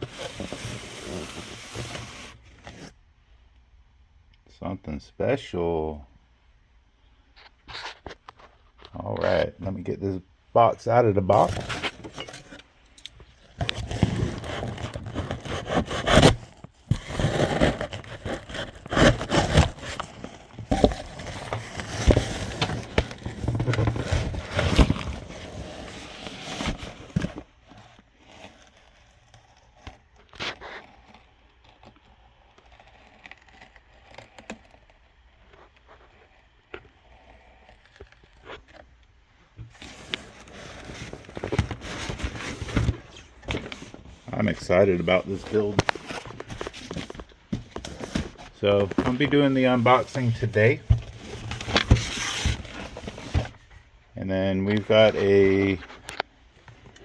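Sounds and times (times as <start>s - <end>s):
cardboard box scraping: 0.0s - 3.0s, 11.3s - 57.0s
packaging crinkling: 11.4s - 38.8s, 39.7s - 53.9s.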